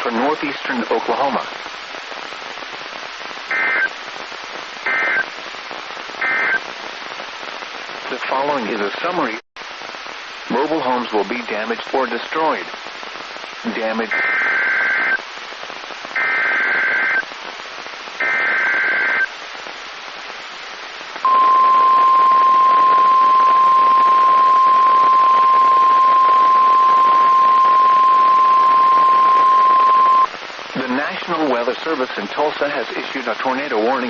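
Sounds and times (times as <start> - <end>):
radio hiss: 0.0 - 34.0
steady alarm tone: 21.2 - 30.3.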